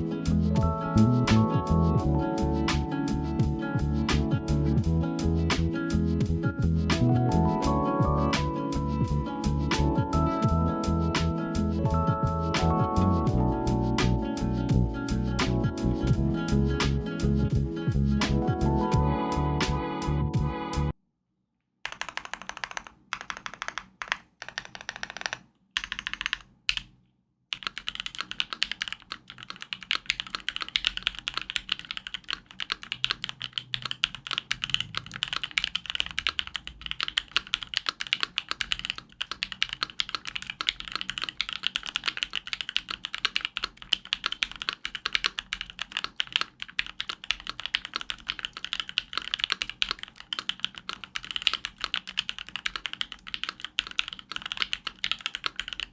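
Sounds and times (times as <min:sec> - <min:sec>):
typing on mechanical keyboard: 0:21.9 - 0:26.9, 0:27.5 - 0:55.9.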